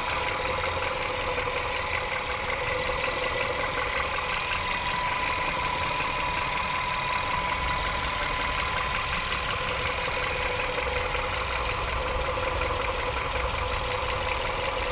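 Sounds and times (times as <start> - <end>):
car engine running: 0.0 - 14.9
whirring gearbox whine: 4.3 - 12.8.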